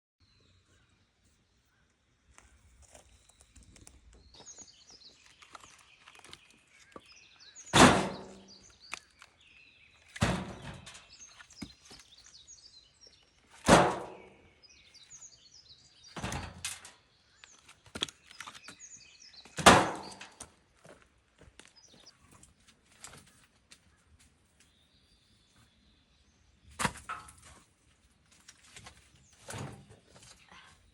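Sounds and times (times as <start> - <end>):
small birds chirping: 0.2 - 30.9
firewood thudding onto woodpile: 7.7 - 8.5, 10.1 - 12.0, 13.6 - 14.4, 16.2 - 16.9, 19.6 - 20.5, 26.7 - 27.6.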